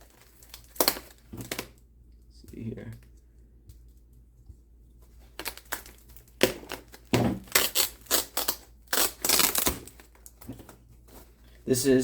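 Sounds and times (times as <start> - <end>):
packaging crinkling and rustling: 0.0 - 1.8, 5.0 - 11.6.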